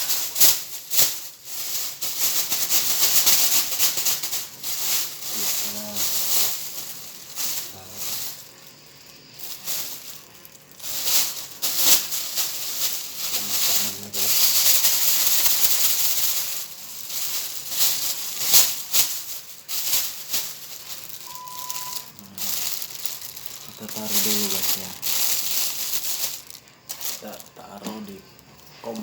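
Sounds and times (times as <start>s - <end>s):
plastic bag rustling: 0.0s - 29.0s
short steady beep: 21.2s - 22.1s.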